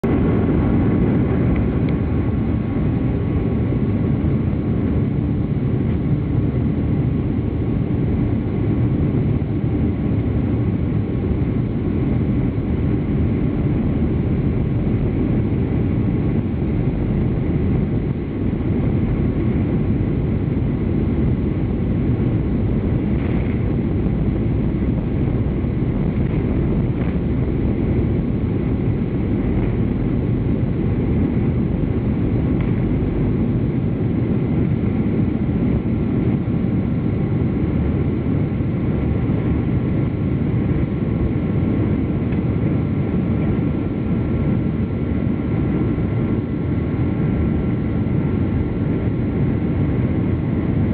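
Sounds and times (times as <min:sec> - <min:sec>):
jet engines running: 0:00.0 - 0:50.9.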